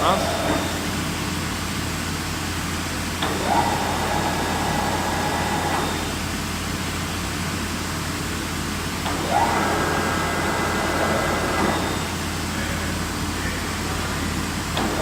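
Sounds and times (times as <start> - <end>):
motor whine: 0.0 - 1.8, 3.2 - 6.7, 9.0 - 12.8
milling machine humming: 0.0 - 15.0.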